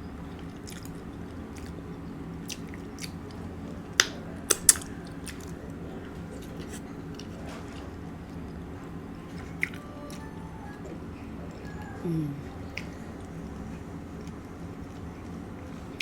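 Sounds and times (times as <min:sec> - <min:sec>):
close chewing: 0:00.4 - 0:16.0
sharp mouth clicks: 0:04.0 - 0:05.5.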